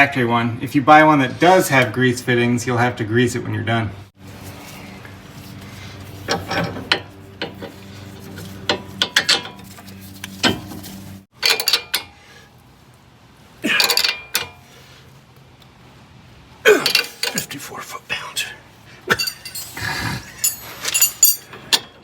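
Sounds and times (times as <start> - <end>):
metal tools clinking and rattling: 6.3 - 10.7, 13.7 - 14.6, 16.8 - 17.6, 19.1 - 22.0.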